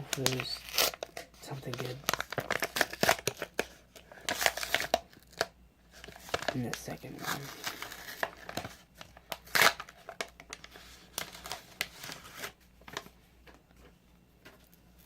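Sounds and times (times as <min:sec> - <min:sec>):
packaging rustling and crinkling: 0:00.0 - 0:13.9.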